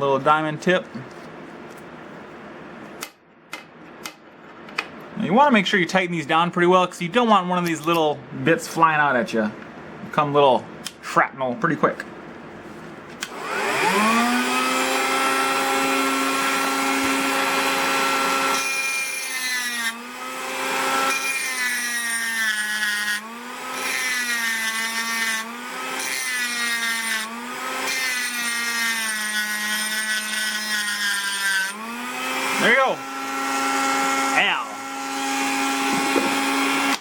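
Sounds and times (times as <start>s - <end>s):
rotary tool whining and grinding: 13.2s - 37.0s.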